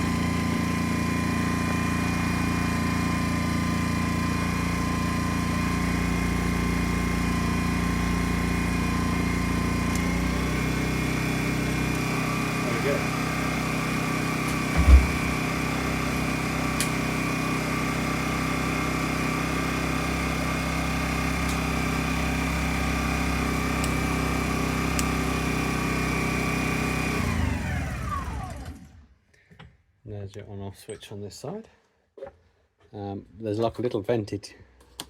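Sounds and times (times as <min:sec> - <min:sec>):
generator engine running: 0:00.0 - 0:29.0
low thump: 0:14.7 - 0:15.5.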